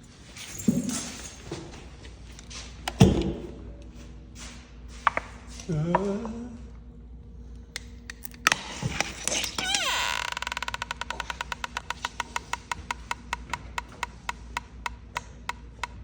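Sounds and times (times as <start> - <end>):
rising creak: 8.9 - 13.3.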